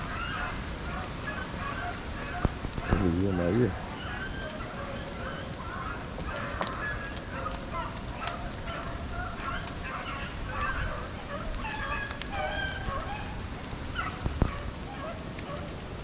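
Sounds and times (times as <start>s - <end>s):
clicks and crackles: 0.0s - 16.0s
dogs baying: 0.1s - 15.8s.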